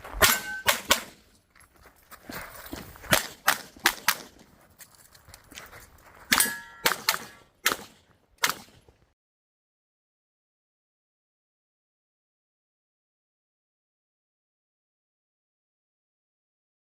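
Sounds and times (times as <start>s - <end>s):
steel target ringing: 0.2s - 1.1s, 6.3s - 7.4s
pistol shots: 0.2s - 1.2s, 3.1s - 4.4s, 6.3s - 8.9s.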